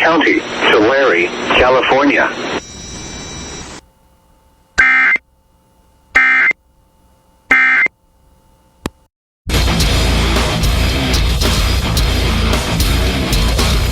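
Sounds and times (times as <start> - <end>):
digital data tone bursts: 4.8 - 5.2, 6.2 - 6.6, 7.5 - 7.9
loud heavy metal music: 9.5 - 13.9.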